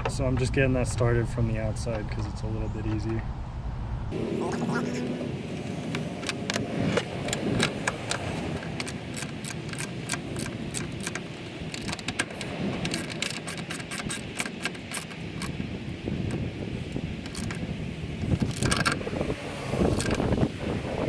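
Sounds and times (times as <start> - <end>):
socket ratchet clicking: 5.9 - 16.5, 17.2 - 17.6, 18.2 - 19.0.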